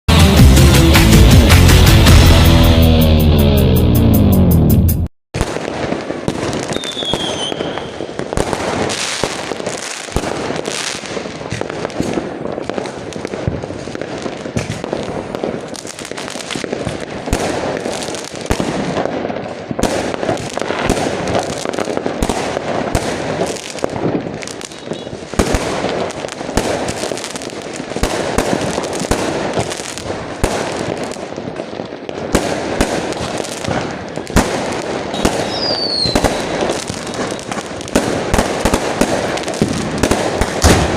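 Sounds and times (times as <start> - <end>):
fireworks banging and crackling: 5.4 - 40.9.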